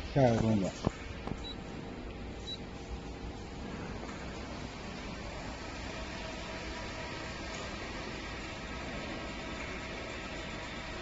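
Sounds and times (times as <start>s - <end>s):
electric stage hoists running: 3.5s - 11.0s.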